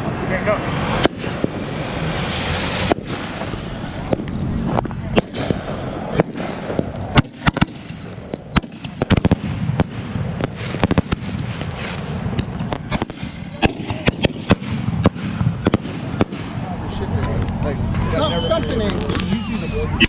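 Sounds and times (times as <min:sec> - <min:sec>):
fireworks cracking and popping: 0:00.8 - 0:16.6, 0:18.4 - 0:20.0.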